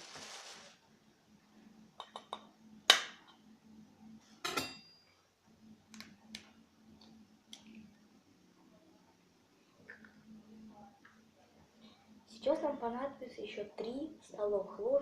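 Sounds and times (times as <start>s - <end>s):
dishware and utensils clinking: 4.4s - 5.1s.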